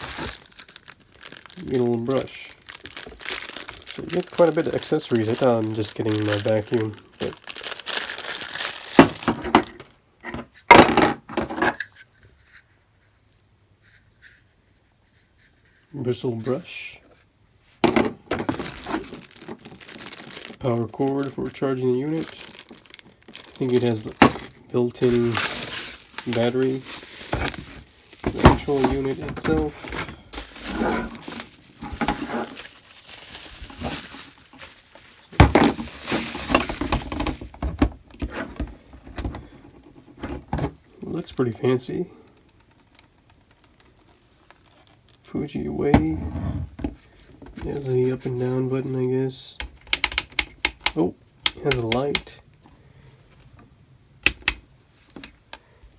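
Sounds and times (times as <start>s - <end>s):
plastic packaging handled: 0.0s - 10.9s, 17.8s - 41.2s, 42.3s - 45.3s, 46.6s - 48.8s, 49.6s - 52.4s.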